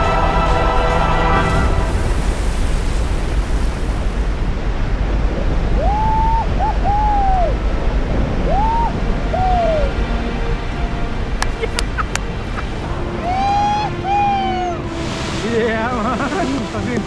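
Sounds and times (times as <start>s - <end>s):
waterfall roaring: 0.0s - 17.0s
rising and falling hooting calls: 5.7s - 15.0s.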